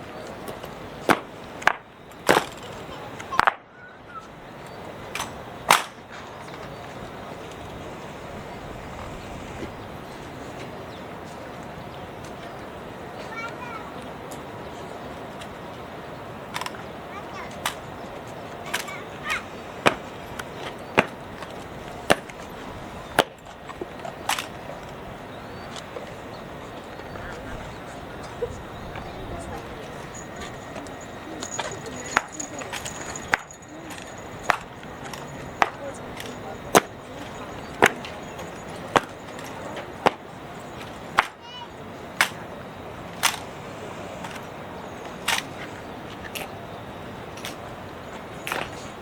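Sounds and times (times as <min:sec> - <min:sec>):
rifles slapping and knocking: 0:24.3 - 0:24.6, 0:30.2 - 0:40.2, 0:40.8 - 0:41.4
hands slapping wooden rifles: 0:41.2 - 0:41.4.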